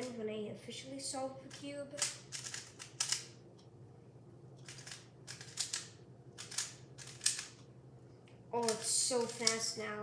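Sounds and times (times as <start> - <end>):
puzzle cube layers clicking: 2.0 - 3.3, 4.6 - 7.6.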